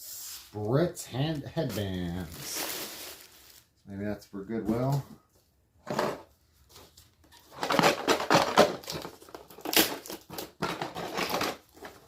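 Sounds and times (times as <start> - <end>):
rummaging through items in a box: 1.6 - 3.6, 5.8 - 12.0.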